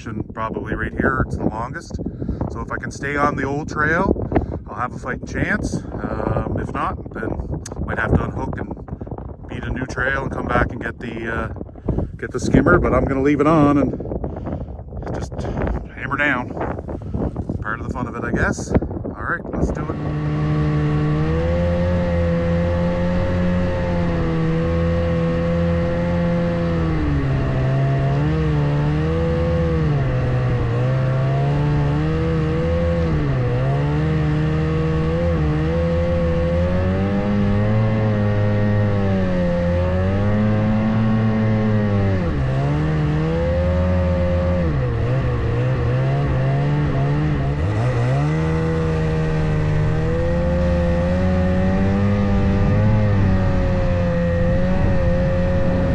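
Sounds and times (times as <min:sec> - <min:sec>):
snowmobile engine revving under load: 0:11.2 - 0:18.0, 0:19.6 - 0:55.9.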